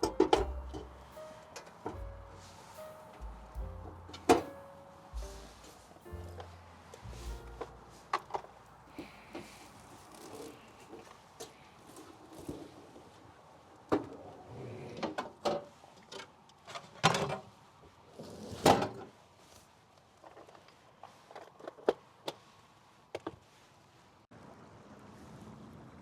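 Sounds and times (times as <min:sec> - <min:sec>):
knocks and clicks of objects handled: 0:00.0 - 0:02.2, 0:03.2 - 0:04.6.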